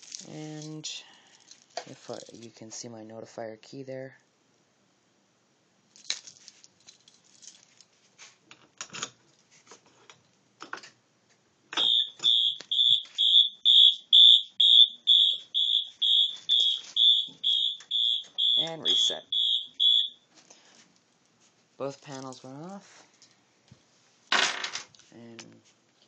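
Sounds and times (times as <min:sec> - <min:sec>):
fire alarm beeping: 0:11.8 - 0:20.2.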